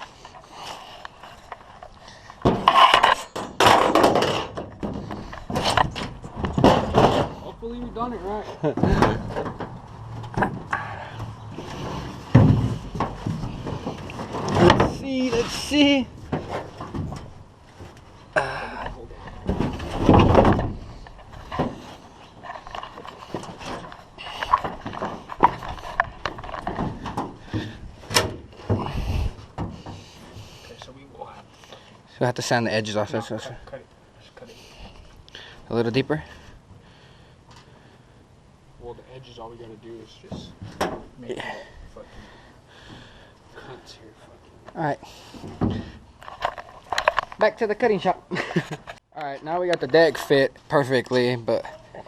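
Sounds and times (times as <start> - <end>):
wooden board scraping and knocking: 1.5 - 7.5, 8.6 - 18.0, 19.2 - 30.6.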